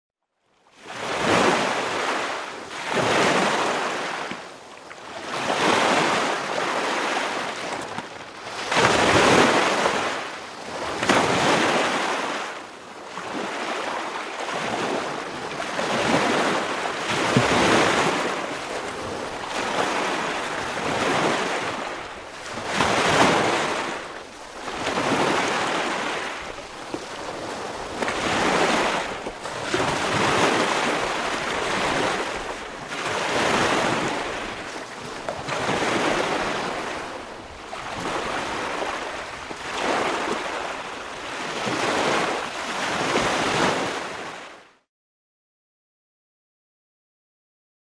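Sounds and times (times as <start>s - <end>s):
ocean waves breaking on beach: 0.7s - 44.8s.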